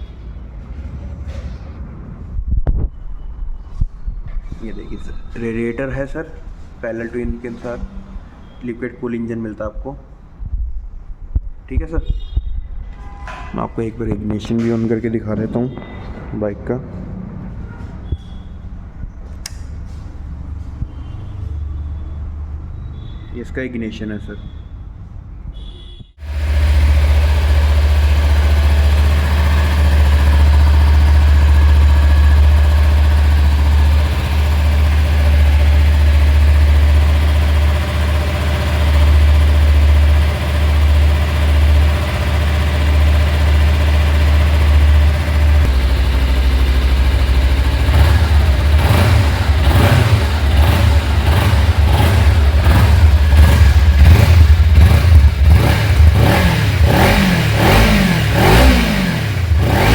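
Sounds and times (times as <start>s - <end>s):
motorcycle engine revving: 26.2s - 59.9s
motorcycle engine starting and idling: 26.2s - 59.9s.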